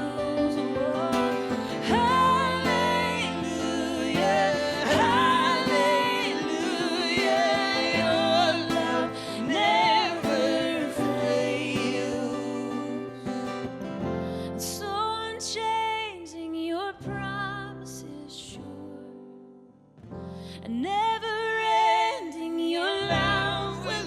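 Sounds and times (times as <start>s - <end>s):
person singing with vibrato: 0.0s - 13.7s, 20.7s - 24.0s
instrumental accompaniment: 0.0s - 14.3s.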